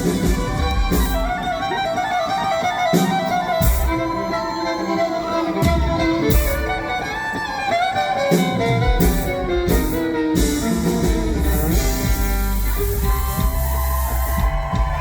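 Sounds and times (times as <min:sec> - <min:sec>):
drums: 0:00.0 - 0:15.0
electric guitar: 0:00.0 - 0:15.0
fiddle playing sliding lines: 0:00.0 - 0:15.0
bass: 0:09.0 - 0:15.0.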